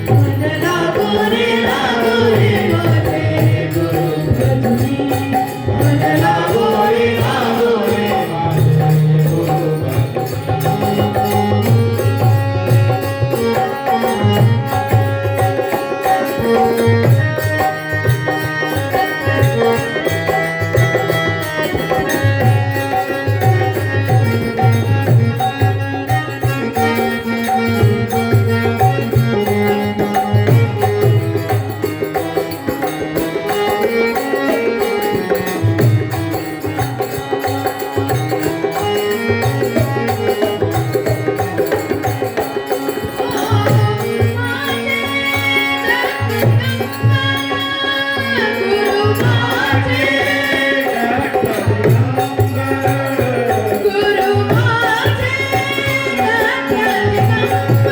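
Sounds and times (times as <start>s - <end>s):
person singing: 0.0s - 13.0s, 42.6s - 57.9s
dholak drum beat: 0.0s - 57.9s
harmonium melody in held notes: 0.0s - 57.9s.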